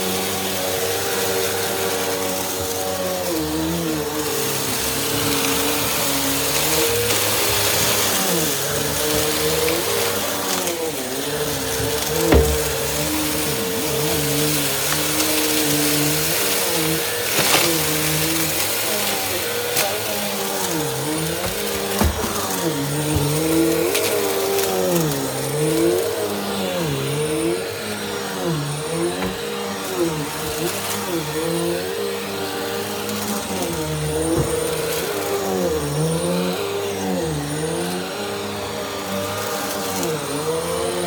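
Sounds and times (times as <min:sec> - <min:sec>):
vacuum cleaner running: 0:00.0 - 0:41.0
light knocks: 0:11.6 - 0:14.2, 0:29.2 - 0:29.5, 0:34.3 - 0:34.8.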